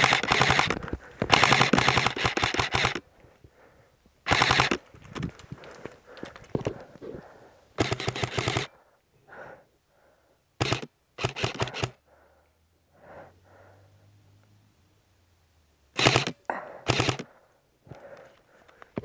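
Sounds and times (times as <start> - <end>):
airsoft gun firing bursts: 0.0 - 3.0, 4.2 - 4.8, 7.8 - 8.7, 10.6 - 12.0, 16.0 - 17.3.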